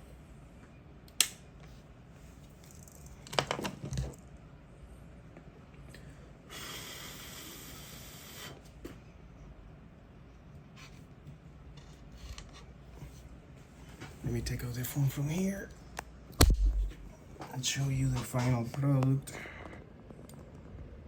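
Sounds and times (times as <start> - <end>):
sharp click: 16.4 - 17.1.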